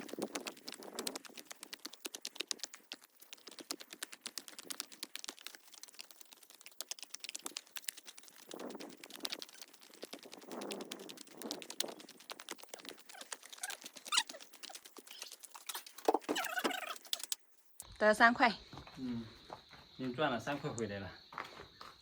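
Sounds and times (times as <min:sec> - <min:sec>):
footsteps: 0:18.6 - 0:22.0.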